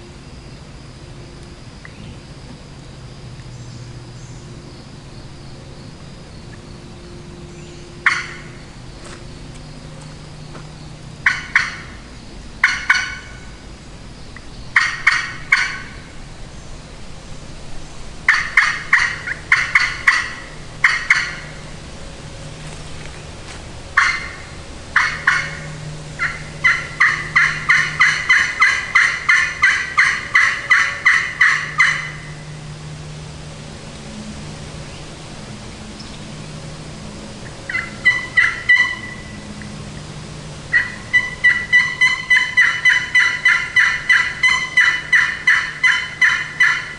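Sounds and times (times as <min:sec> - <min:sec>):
turkey yelps: 0:08.0 - 0:08.5, 0:11.2 - 0:11.9, 0:12.6 - 0:13.4, 0:14.8 - 0:15.9, 0:18.3 - 0:21.5, 0:24.0 - 0:24.4, 0:25.0 - 0:25.6, 0:26.2 - 0:32.3, 0:37.7 - 0:39.2, 0:40.7 - 0:46.9.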